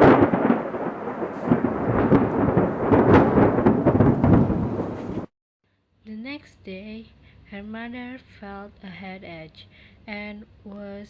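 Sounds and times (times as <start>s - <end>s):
rolling thunder: 0.0s - 5.3s.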